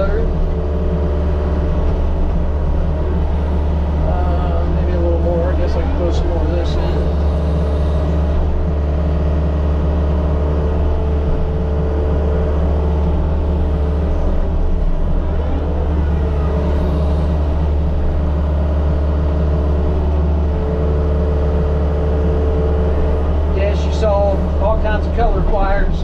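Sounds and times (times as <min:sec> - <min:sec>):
diesel engine running under load: 0:00.0 - 0:26.0.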